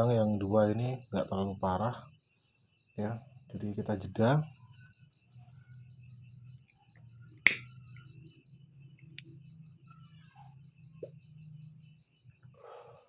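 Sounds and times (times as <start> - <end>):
crickets chirping: 0.0 - 13.0
sharp click: 7.5 - 7.7.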